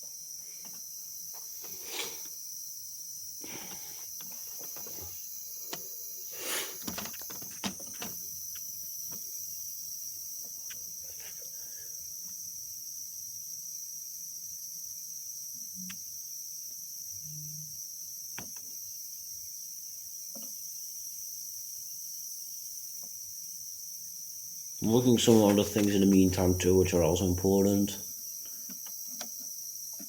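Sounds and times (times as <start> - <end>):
handling clicks and rustles: 6.8 - 9.2.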